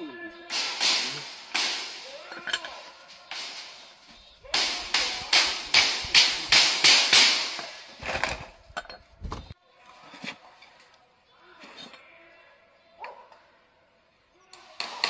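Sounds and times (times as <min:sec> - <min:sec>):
hammer driving a nail into wood: 0:04.6 - 0:07.6.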